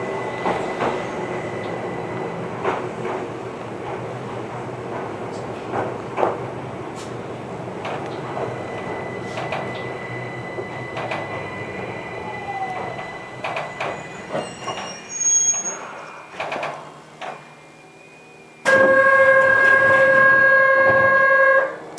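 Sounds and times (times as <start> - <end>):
train running noise: 0.0 - 21.9
brake squeal: 8.3 - 16.6, 17.2 - 20.9.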